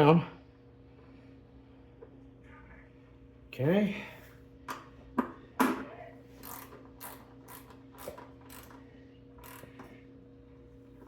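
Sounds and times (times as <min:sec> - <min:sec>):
hand ratchet clicking: 0:06.4 - 0:08.8, 0:09.4 - 0:09.9.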